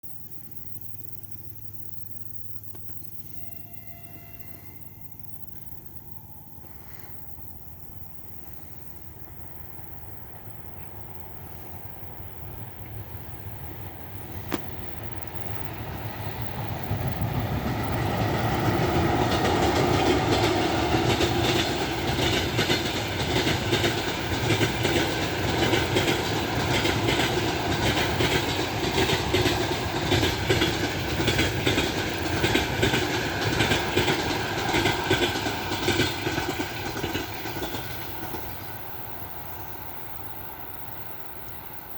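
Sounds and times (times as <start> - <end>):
electric locomotive hum: 0.2 - 41.9
train wheels clattering over rail joints: 13.1 - 39.5.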